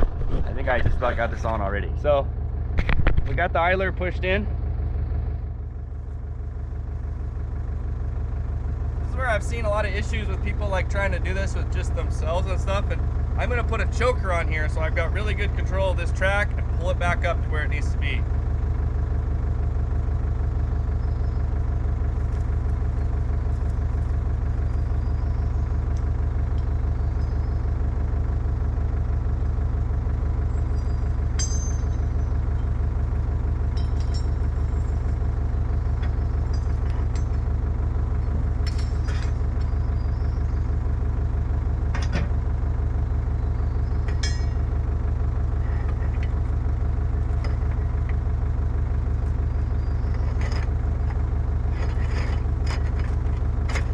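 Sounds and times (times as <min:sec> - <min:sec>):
diesel engine running: 0:00.0 - 0:53.9
short sharp metal clinks: 0:30.6 - 0:32.7, 0:44.1 - 0:44.7.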